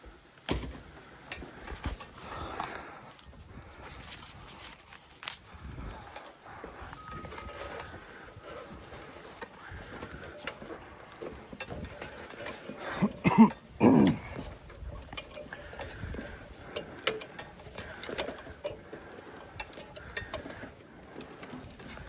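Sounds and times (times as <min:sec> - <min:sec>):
faint clicks and knocks: 0:00.3 - 0:22.0
person's short vocal sounds: 0:12.9 - 0:14.4.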